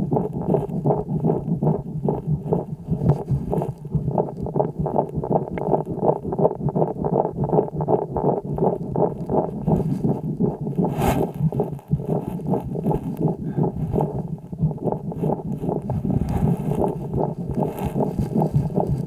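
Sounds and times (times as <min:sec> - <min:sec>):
crackling lung breathing: 0:00.0 - 0:19.0.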